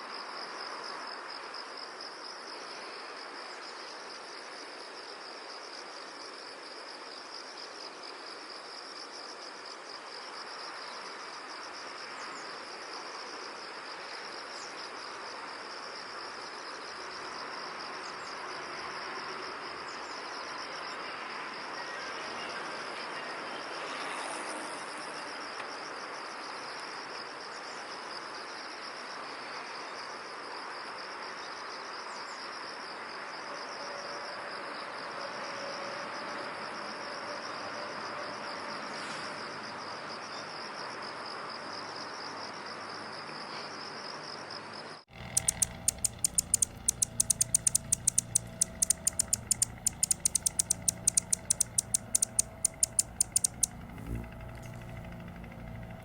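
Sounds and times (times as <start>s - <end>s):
crickets trilling: 45.1s - 56.0s.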